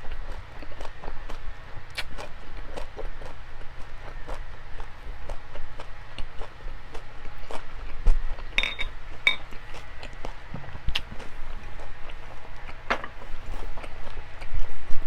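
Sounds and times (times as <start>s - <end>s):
chewing with wet mouth clicks: 0.0s - 8.6s
tableware clinking: 8.6s - 9.5s.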